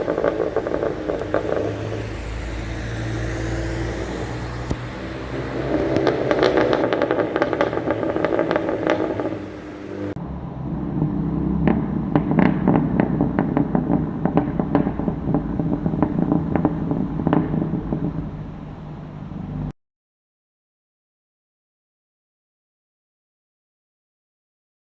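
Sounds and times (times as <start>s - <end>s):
car engine running: 0.0s - 10.2s
exhaust popping and crackling: 0.0s - 19.7s.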